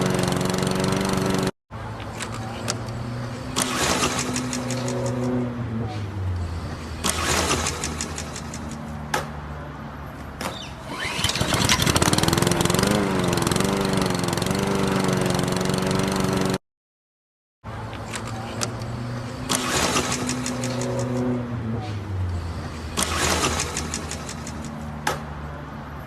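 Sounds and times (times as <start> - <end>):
engine running: 0.0 - 1.5, 2.2 - 9.6, 10.9 - 16.6, 18.0 - 25.7
starter clicks: 23.0 - 25.3.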